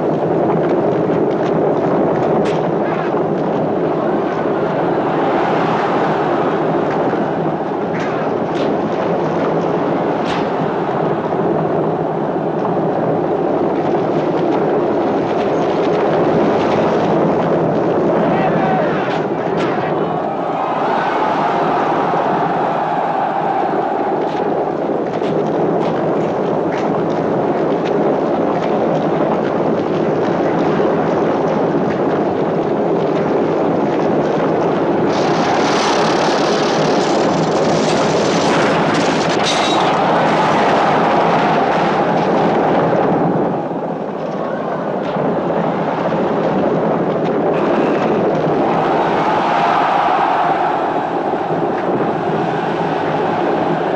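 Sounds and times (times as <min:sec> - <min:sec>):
galloping horses: 0:22.6 - 0:43.3.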